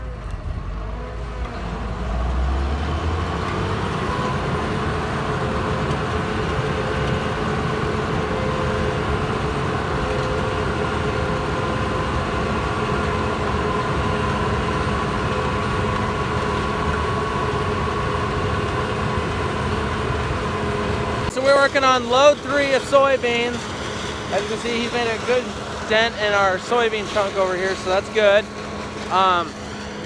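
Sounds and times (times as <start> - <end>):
farm machinery engine droning: 0.0 - 30.0.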